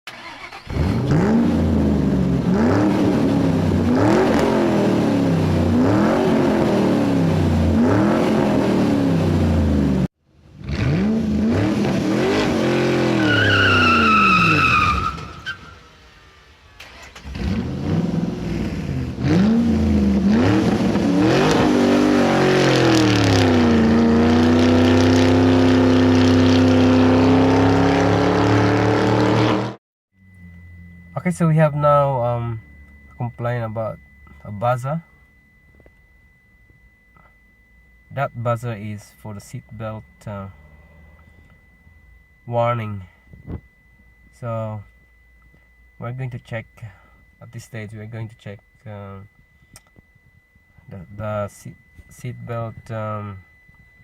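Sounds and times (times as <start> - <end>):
car engine revving: 0.1 - 35.0
tyre squeal: 12.4 - 15.8.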